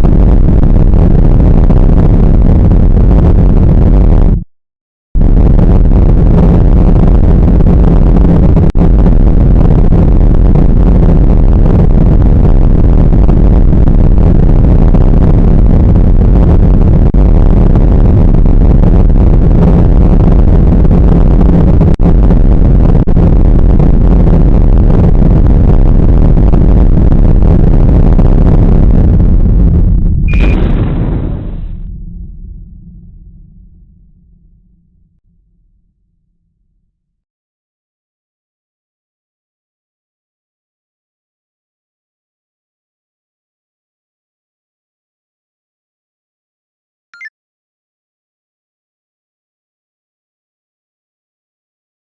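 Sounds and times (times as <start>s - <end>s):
rocket engine rumble: 0.0s - 4.5s, 5.2s - 35.2s.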